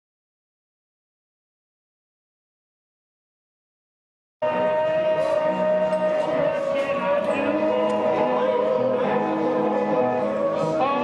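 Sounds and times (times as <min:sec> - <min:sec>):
song with held notes: 0:04.4 - 0:11.0.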